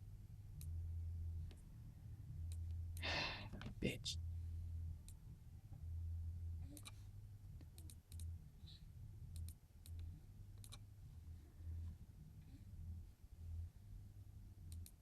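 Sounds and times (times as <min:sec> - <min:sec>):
faint low hum: 0:00.0 - 0:15.0
computer mouse clicking: 0:06.7 - 0:07.0, 0:07.6 - 0:08.3, 0:09.3 - 0:10.8, 0:14.7 - 0:15.0.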